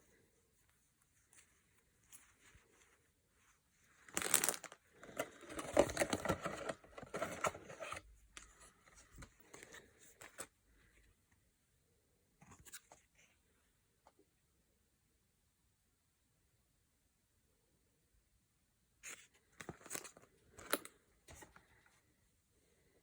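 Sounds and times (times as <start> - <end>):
packaging crinkling and rustling: 4.1 - 8.0.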